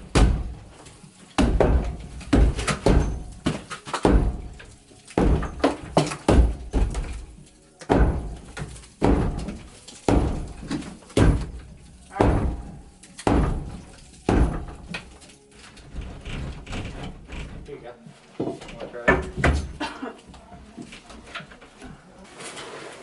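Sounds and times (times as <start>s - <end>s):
sledgehammer blows: 7.9s - 14.9s.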